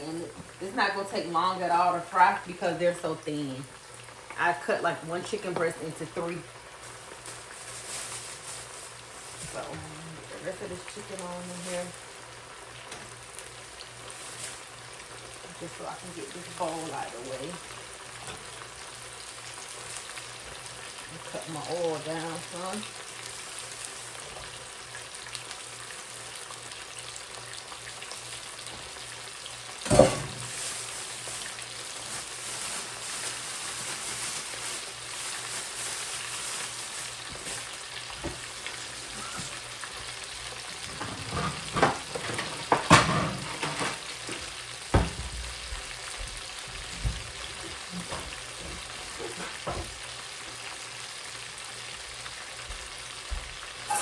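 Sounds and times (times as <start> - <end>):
chicken frying in oil: 0.0 - 54.0
knocks against pan: 29.9 - 30.5, 41.0 - 43.9, 44.9 - 45.6.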